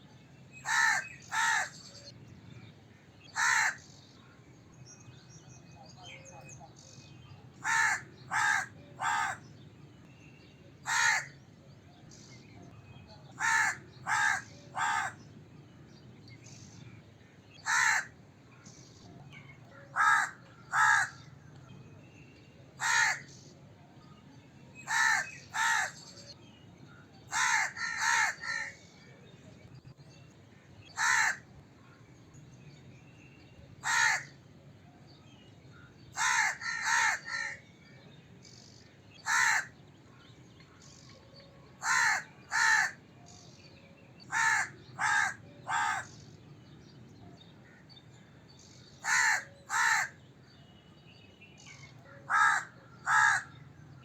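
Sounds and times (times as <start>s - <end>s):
crow cawing: 0.6s - 1.7s, 3.4s - 3.8s, 7.6s - 9.4s, 10.8s - 11.4s, 13.4s - 15.2s, 17.6s - 18.1s, 19.9s - 21.3s, 22.8s - 23.3s, 24.9s - 26.0s, 27.3s - 28.8s, 31.0s - 31.4s, 33.8s - 34.3s, 36.2s - 37.6s, 39.2s - 39.7s, 41.8s - 43.0s, 44.3s - 46.1s, 49.0s - 50.2s, 52.2s - 53.6s.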